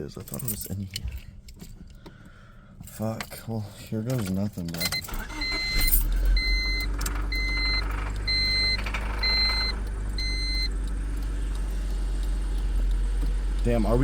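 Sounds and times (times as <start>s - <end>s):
car warning chime beeping: 4.8s - 14.0s
low car hum: 5.0s - 14.0s.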